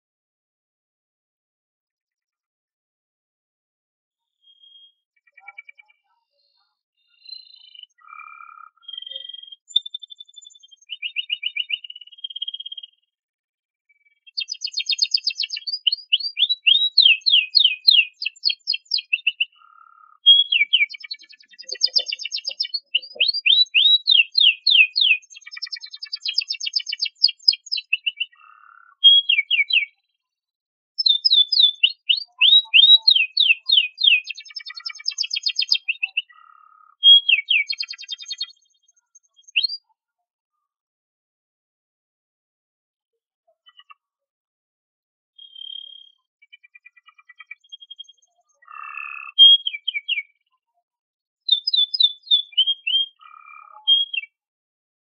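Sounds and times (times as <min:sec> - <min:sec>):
canary singing trills: 0:04.4 - 0:13.0, 0:14.0 - 0:30.1, 0:31.0 - 0:39.9, 0:45.4 - 0:50.4, 0:51.4 - 0:54.4.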